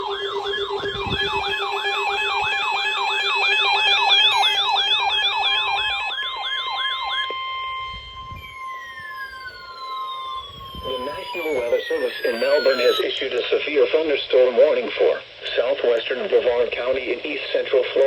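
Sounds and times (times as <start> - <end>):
electronic siren yelping: 0.0 - 13.2
steady high tone: 0.0 - 14.7.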